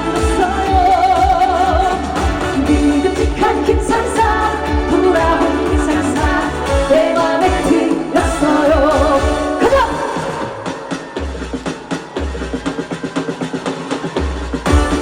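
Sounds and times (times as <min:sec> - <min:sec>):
kick drum beat: 0:00.0 - 0:09.9, 0:10.8 - 0:15.0
woman singing: 0:00.0 - 0:11.2
amplified pop accompaniment: 0:00.0 - 0:15.0.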